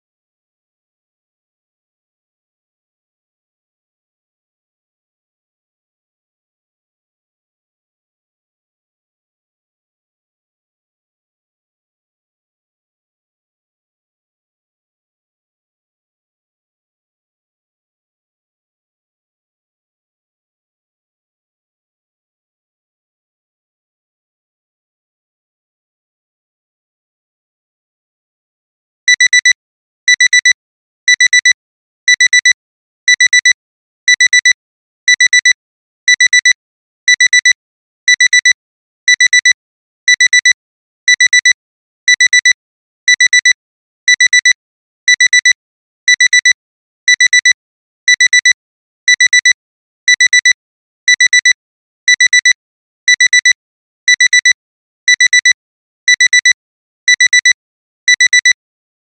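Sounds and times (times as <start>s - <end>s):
alarm clock beeping: 29.1s - 29.5s, 30.1s - 35.5s, 36.1s - 36.5s, 37.1s - 58.6s.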